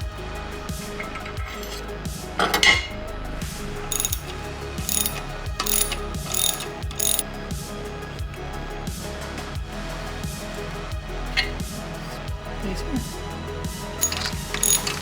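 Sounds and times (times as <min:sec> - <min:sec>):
ratchet wrench clicking: 0:03.9 - 0:07.2, 0:14.0 - 0:15.0.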